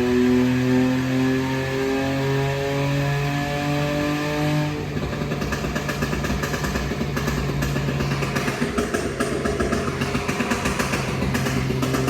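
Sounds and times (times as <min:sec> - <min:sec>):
car engine revving: 0:00.0 - 0:12.0
exhaust crackling and popping: 0:04.7 - 0:12.0.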